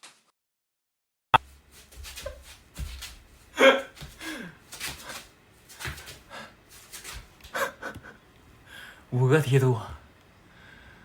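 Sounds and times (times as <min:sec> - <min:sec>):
man crying out: 0:03.6 - 0:04.5.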